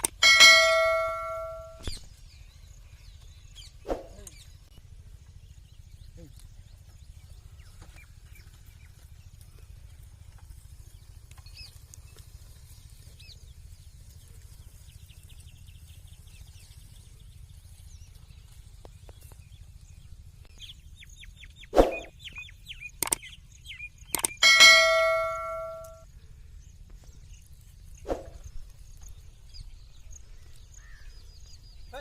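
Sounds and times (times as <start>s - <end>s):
birds chirping faintly: 0.0s - 32.0s
short high bird trill: 0.2s - 2.0s, 21.8s - 22.1s, 24.2s - 26.0s.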